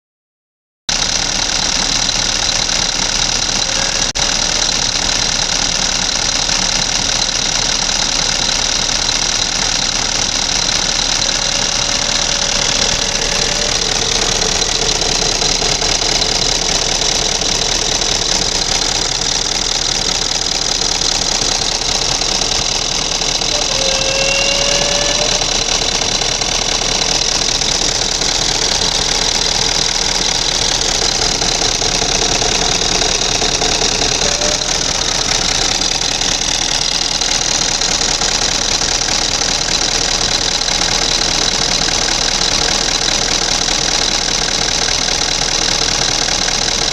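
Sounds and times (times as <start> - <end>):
diesel engine running: 0.9 - 46.9
short rising squeak: 10.5 - 20.1, 21.3 - 27.8, 31.6 - 36.4.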